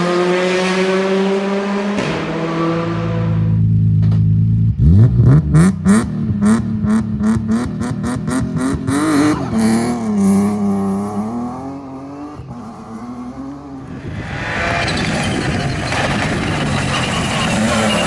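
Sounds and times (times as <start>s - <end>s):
rally car engine revving: 0.0s - 18.0s.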